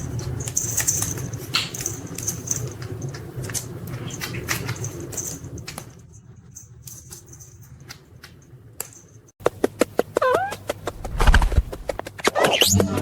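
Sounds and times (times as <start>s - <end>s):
parrot chirping: 10.2s - 10.6s.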